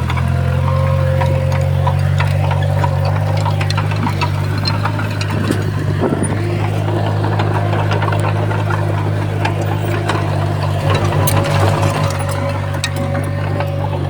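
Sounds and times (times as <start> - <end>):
heavy diesel engine running: 0.0 - 14.0
metallic clicks and clanks: 0.0 - 14.0.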